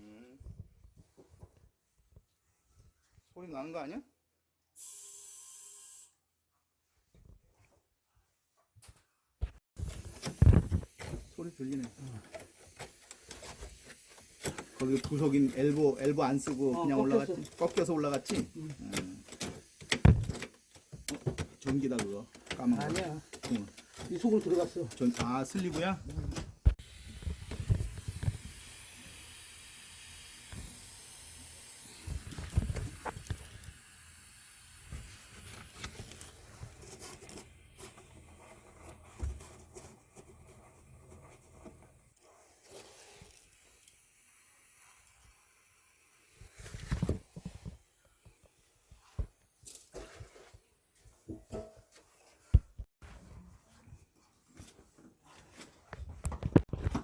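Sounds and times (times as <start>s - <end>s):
gas hissing from pipe: 9.8s - 25.8s, 26.8s - 36.8s, 37.4s - 51.7s
knocks and scrapes on pipe: 35.6s - 42.0s, 49.1s - 53.5s.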